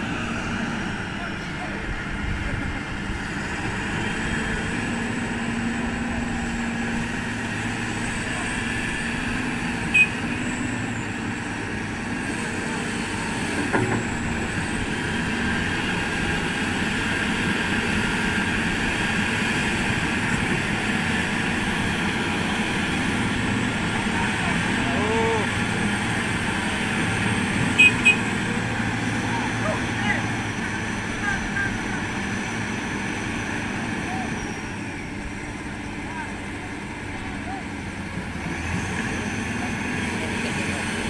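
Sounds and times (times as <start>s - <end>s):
excavator diesel engines running: 0.0s - 41.0s.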